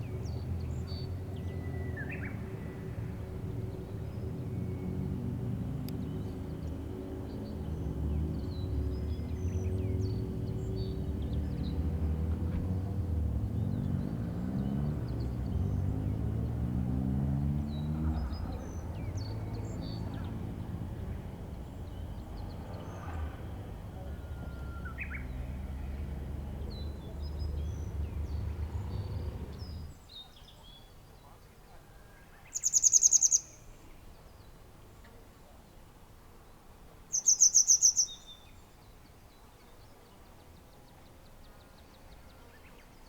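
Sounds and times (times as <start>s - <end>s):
vehicle engine accelerating: 0.0s - 30.0s.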